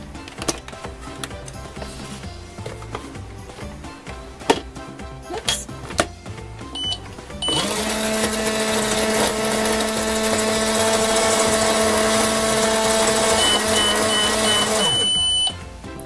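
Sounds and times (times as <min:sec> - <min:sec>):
short high beeps: 0:06.8 - 0:07.6, 0:13.3 - 0:15.6
microwave motor humming: 0:06.8 - 0:15.6.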